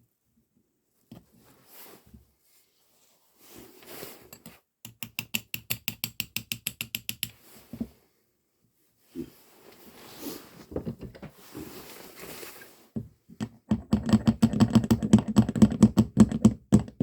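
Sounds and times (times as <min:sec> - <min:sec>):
soft handling of metal parts: 0:09.1 - 0:13.4.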